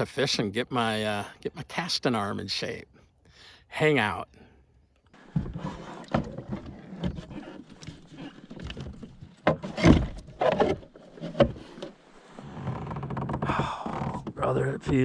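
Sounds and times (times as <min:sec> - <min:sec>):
knocks and clunks in a kayak: 0:05.2 - 0:15.0.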